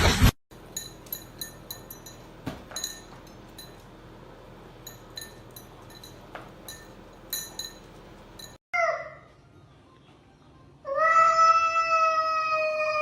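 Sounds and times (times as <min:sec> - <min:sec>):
high-pitched clinking: 0:00.6 - 0:04.1, 0:04.7 - 0:08.6.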